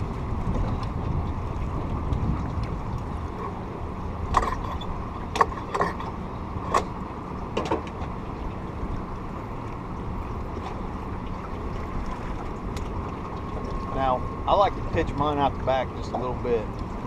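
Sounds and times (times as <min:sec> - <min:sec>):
boat motor rumbling: 0:00.0 - 0:17.0
moving water: 0:00.0 - 0:17.0
sharp clicks and knocks: 0:04.3 - 0:06.1, 0:07.6 - 0:08.1.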